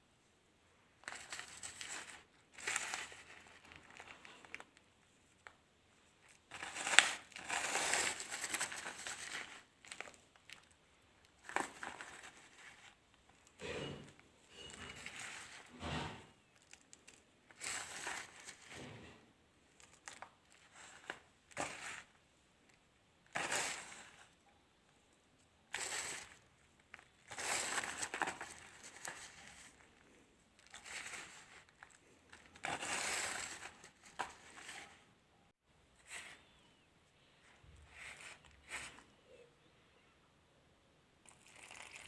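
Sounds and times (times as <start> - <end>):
sand crushing and crumbling: 6.2 - 10.7, 25.7 - 35.0.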